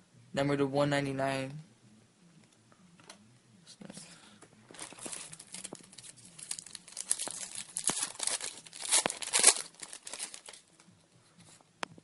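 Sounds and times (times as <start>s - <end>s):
foil wrapper tearing and crinkling: 4.8s - 10.6s.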